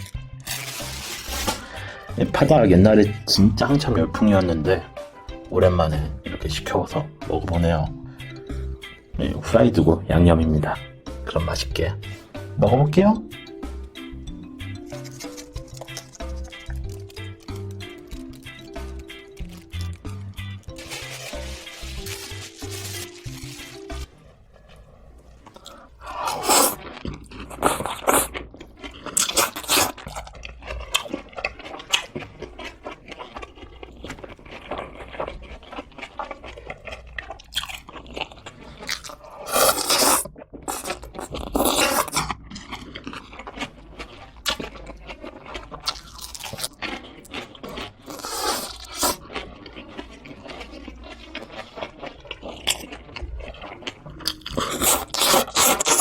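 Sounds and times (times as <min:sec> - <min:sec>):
crisp crunch of biting: 0:00.0 - 0:01.8, 0:14.7 - 0:24.1, 0:25.5 - 0:56.0
chewing: 0:13.4 - 0:56.0.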